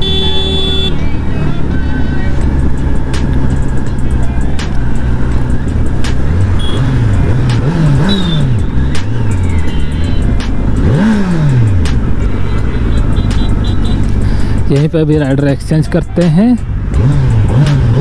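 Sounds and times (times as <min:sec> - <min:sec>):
motorcycle engine revving: 0:00.0 - 0:15.4, 0:16.6 - 0:18.0.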